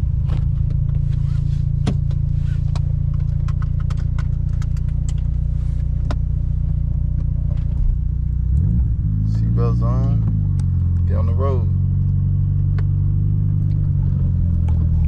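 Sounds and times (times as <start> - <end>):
car engine idling roughly: 0.0 - 8.5
clicks and clatter: 1.9 - 6.2.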